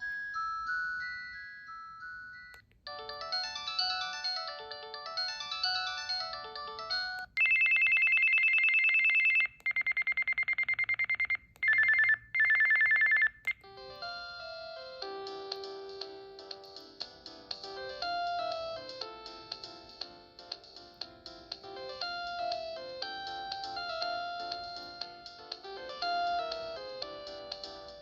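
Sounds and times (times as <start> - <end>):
electronic ringtone melodies: 0.0 - 28.0
telephone ring trill: 3.2 - 13.3.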